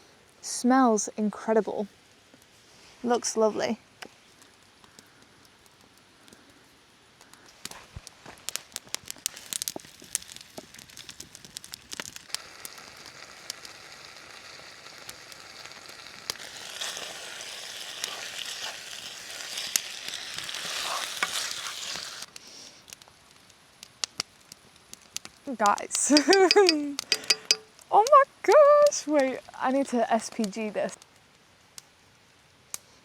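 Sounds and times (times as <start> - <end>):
food sizzling in a pan: 11.8 - 22.8, 25.7 - 28.1
sharp clicks and taps: 26.1 - 27.7.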